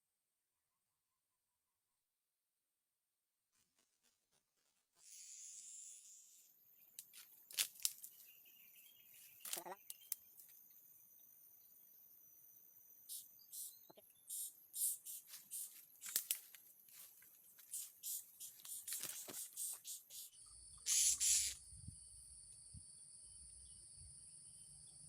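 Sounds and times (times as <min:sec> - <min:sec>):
insect drone: 0:05.0 - 0:25.0
parrot shrill chirps: 0:20.9 - 0:21.6.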